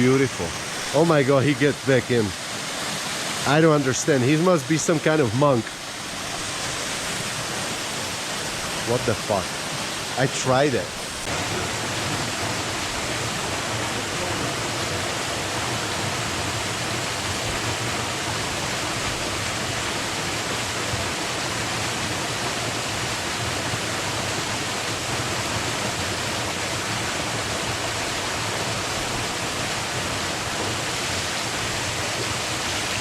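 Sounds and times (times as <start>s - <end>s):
waterfall pouring into pool: 0.0s - 33.0s.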